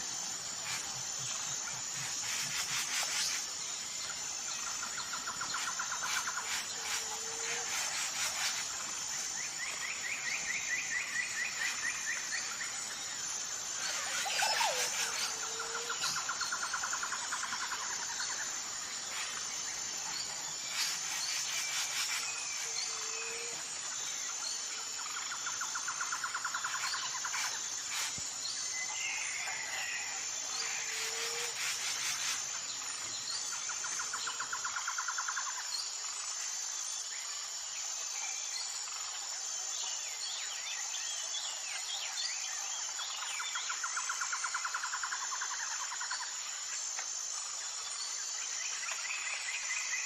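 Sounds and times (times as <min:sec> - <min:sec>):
insects shrilling: 0:13.7 - 0:16.4, 0:30.6 - 0:32.6.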